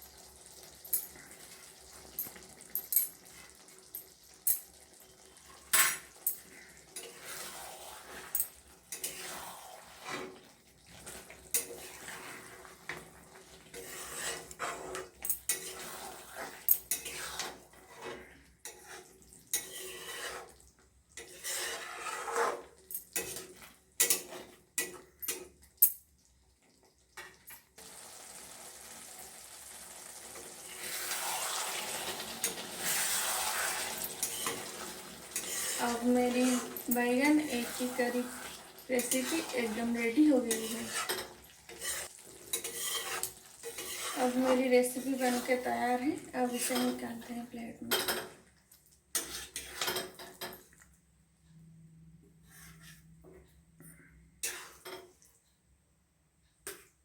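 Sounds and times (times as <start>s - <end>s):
metal spoon scraping a pan: 4.6s - 25.6s, 30.6s - 48.4s, 49.1s - 50.6s, 52.4s - 53.5s, 54.4s - 55.2s.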